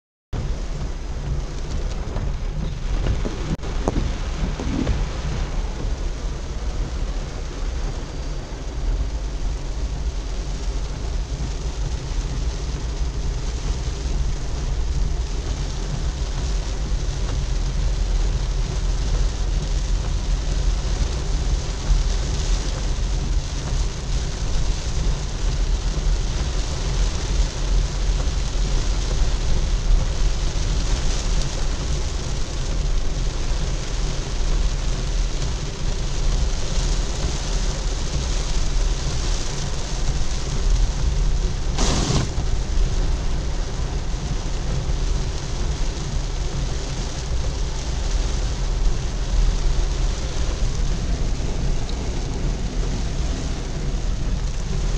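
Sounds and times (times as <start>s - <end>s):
low rumble: 0.4s - 30.2s, 35.6s - 54.9s
car driving on wet road: 0.4s - 54.9s
heavy rain: 0.4s - 54.9s
sharp hiss: 41.7s - 42.4s.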